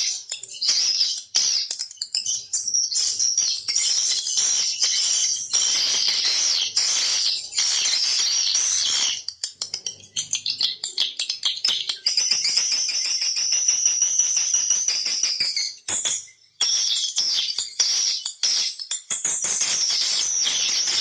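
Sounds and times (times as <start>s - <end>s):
rapid chirps and clicks: 0.0s - 21.0s
swiftlets twittering: 3.0s - 9.3s.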